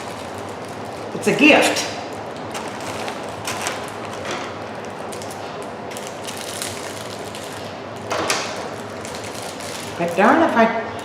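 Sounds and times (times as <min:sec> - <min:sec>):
packaging rustling and clicking: 0:02.1 - 0:10.2.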